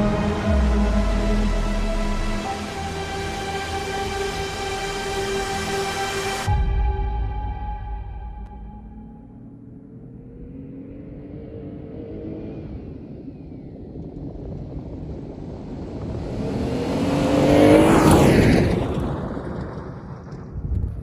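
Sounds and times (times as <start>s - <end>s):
vehicle engine revving past: 16.2s - 19.1s.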